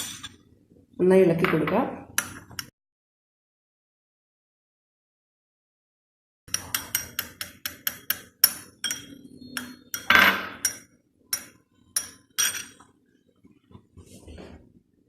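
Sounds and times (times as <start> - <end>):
utensil beating egg in bowl: 6.5 - 12.8.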